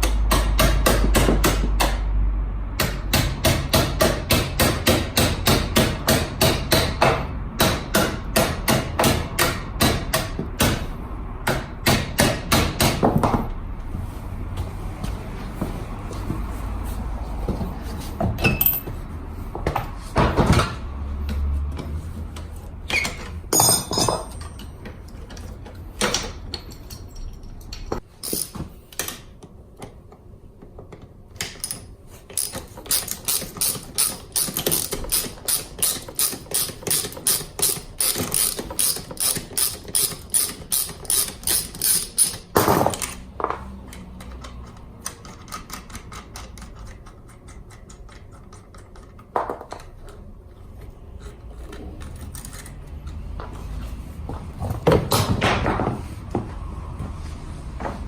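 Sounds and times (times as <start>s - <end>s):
tools knocking and clanking: 17.4s - 29.2s, 30.6s - 57.2s
ratchet wrench clicking: 31.5s - 43.2s.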